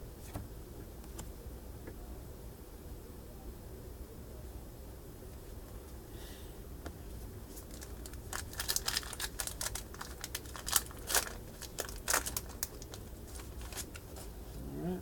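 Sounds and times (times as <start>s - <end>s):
wrapper crinkling and tearing: 7.6s - 14.3s.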